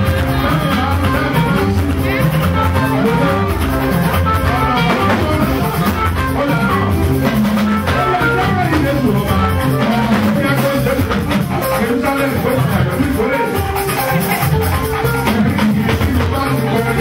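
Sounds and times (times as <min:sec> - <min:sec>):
live band playing gospel: 0:00.0 - 0:17.0.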